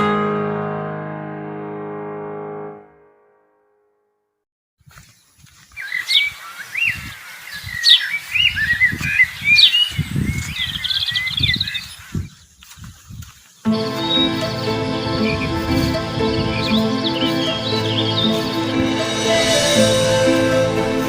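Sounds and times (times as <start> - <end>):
birds singing and chirping: 5.0 - 21.0.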